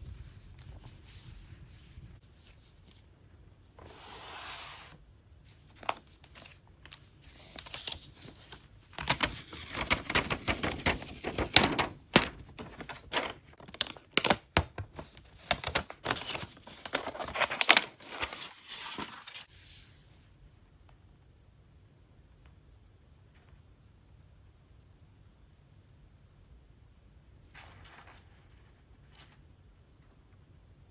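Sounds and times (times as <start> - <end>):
paper and card rustling and tearing: 3.8 - 19.9.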